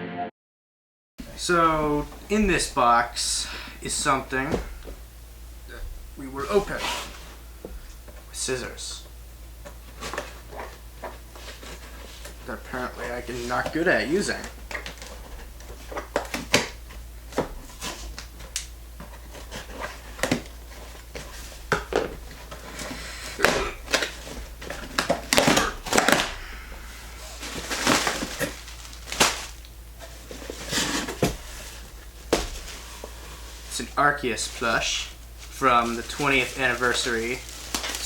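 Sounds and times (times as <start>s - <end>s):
box scraping and crinkling: 6.4s - 7.4s, 19.0s - 34.8s, 35.4s - 38.0s.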